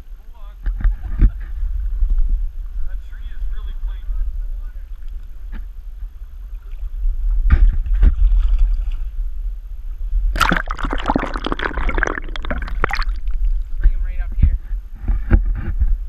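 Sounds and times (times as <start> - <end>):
water splashing: 10.4 - 13.8.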